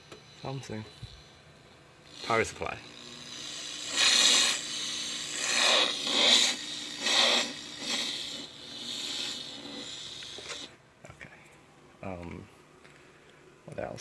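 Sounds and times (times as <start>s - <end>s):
harsh rasping electrical buzz: 0.0s - 10.8s.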